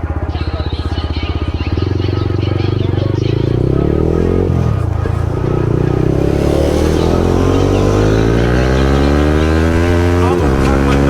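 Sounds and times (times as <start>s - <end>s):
motorcycle engine accelerating: 0.0s - 11.0s.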